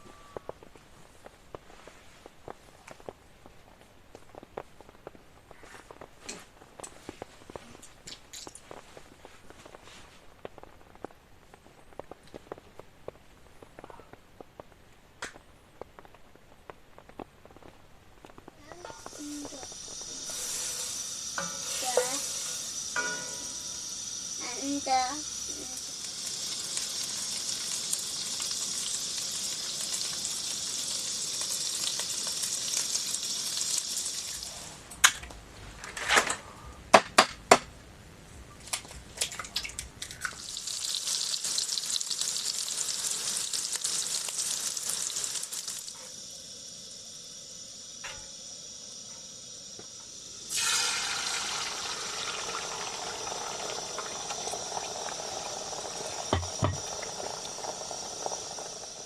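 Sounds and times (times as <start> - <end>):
food sizzling in frying pan: 18.5 - 34.9, 40.0 - 59.0.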